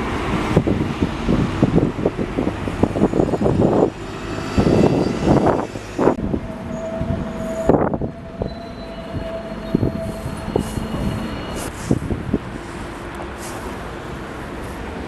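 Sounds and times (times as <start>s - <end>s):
rail vehicle passing: 0.0s - 15.0s
steady whine: 2.4s - 11.5s.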